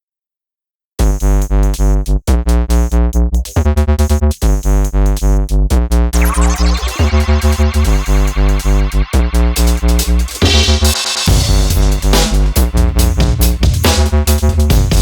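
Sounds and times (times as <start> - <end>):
electronic music with heavy bass: 6.2 - 15.0.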